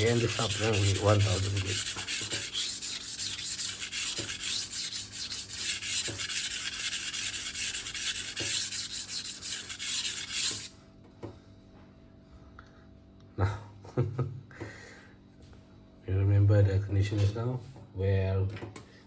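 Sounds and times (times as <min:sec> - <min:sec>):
knife scraping on whetstone: 0:00.0 - 0:10.7.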